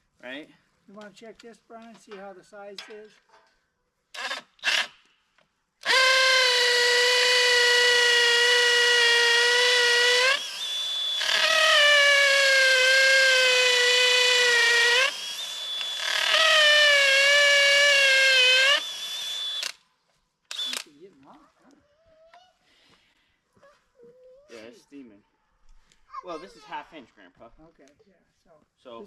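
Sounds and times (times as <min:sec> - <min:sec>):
cordless drill boring into wood: 0:04.2 - 0:05.0, 0:05.8 - 0:19.8, 0:20.5 - 0:20.9.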